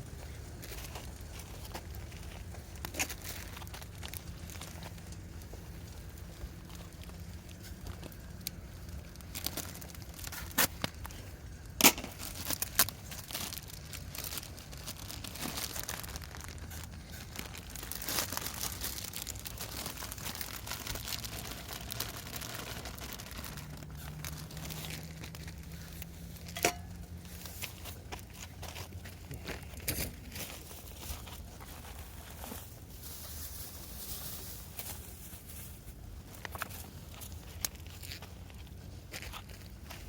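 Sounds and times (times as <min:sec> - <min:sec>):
rustling and crinkling: 0:00.0 - 0:40.0.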